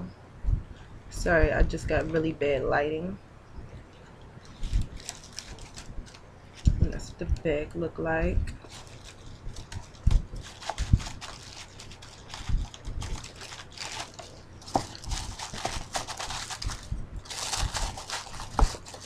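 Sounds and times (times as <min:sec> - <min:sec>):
packaging bag crinkling: 0:04.4 - 0:06.8, 0:08.6 - 0:19.0.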